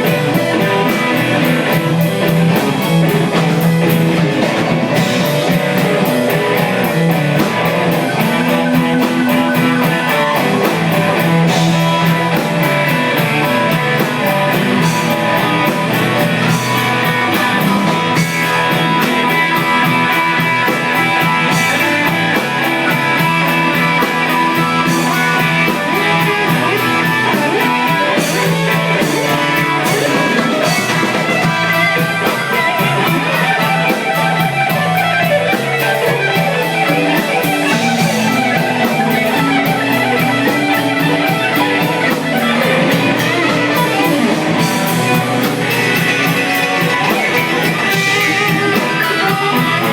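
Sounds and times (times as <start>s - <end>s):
drum kit: 0.0s - 49.9s
electric guitar: 0.0s - 49.9s.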